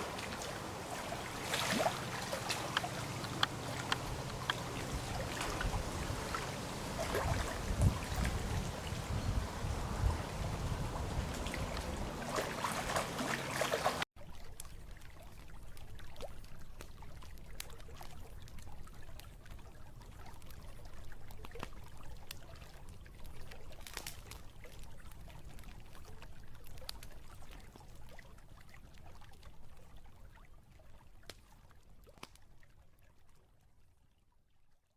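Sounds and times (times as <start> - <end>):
water trickling and pouring: 0.0 - 14.0
small ticks: 0.1 - 5.7.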